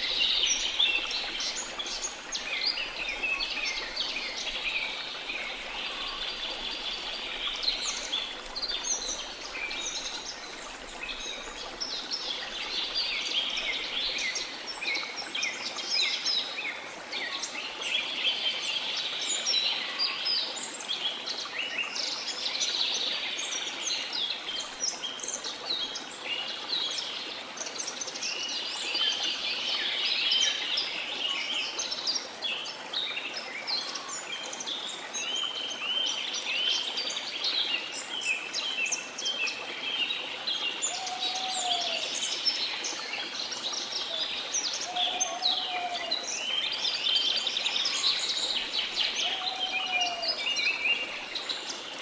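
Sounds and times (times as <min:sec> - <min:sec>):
rush of falling water: 0:00.0 - 0:52.0
birds chirping and trilling: 0:44.1 - 0:51.6.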